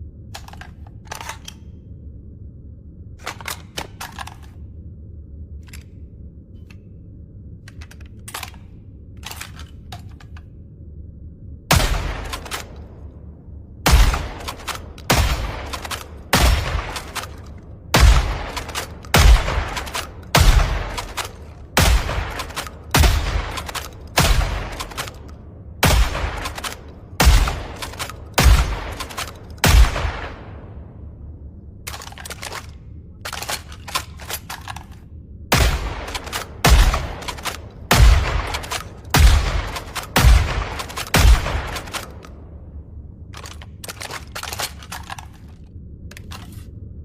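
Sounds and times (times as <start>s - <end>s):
shotgun action clatter: 0.3s - 1.7s, 3.2s - 4.6s, 7.7s - 10.4s, 11.7s - 13.0s, 13.9s - 30.5s, 31.8s - 35.0s, 35.6s - 42.4s, 43.4s - 46.7s
shotgun shots: 13.9s - 30.7s, 35.5s - 42.3s.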